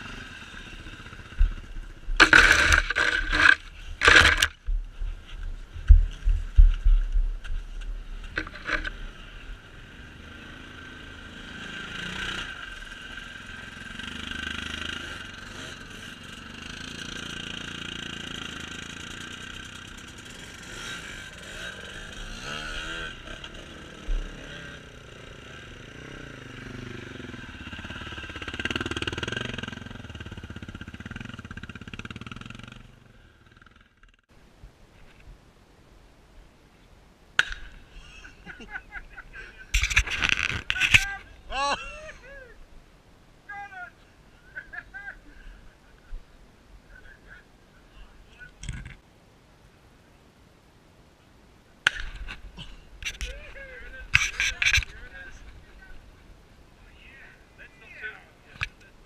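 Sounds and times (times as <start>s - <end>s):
small engine running: 2.2s - 4.5s.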